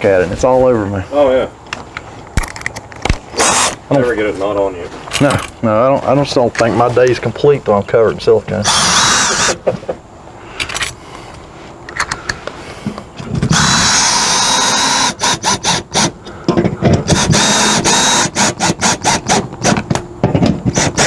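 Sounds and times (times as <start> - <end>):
power driver whining: 2.3 - 5.6, 8.2 - 21.0.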